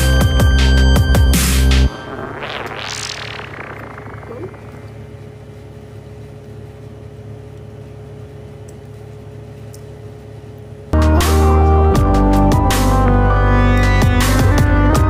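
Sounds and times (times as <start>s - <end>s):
ambient electronic drone pad: 0.0s - 6.3s.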